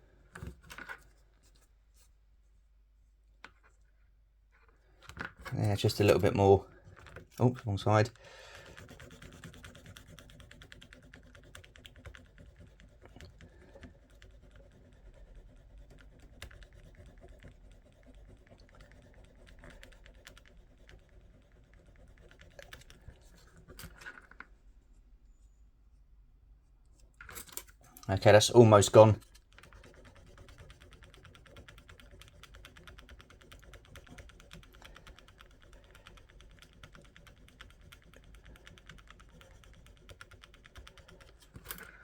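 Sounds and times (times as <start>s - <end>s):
hand file rasping on plastic: 5.5s - 24.0s, 28.6s - 42.0s.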